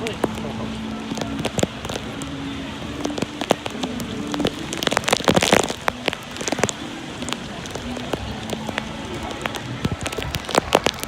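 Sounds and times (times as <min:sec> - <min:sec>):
heavy rain drops striking: 0:00.0 - 0:11.0.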